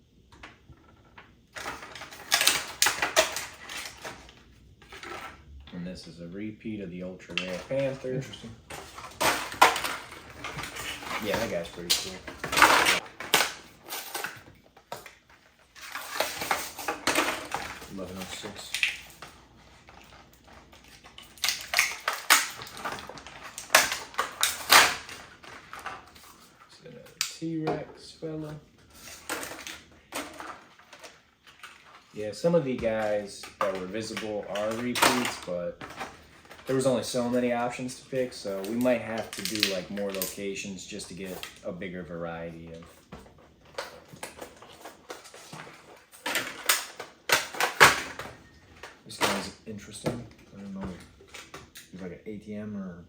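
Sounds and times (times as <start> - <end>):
plastic packaging crinkling: 7.3 - 26.7, 28.8 - 41.7.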